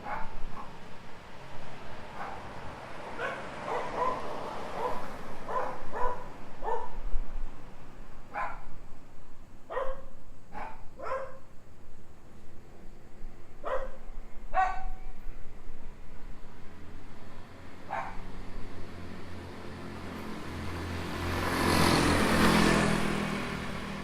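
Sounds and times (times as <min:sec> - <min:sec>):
dog barking: 0:00.0 - 0:00.8, 0:02.1 - 0:07.0, 0:08.3 - 0:08.7, 0:09.7 - 0:11.5, 0:13.6 - 0:15.1, 0:17.9 - 0:18.3.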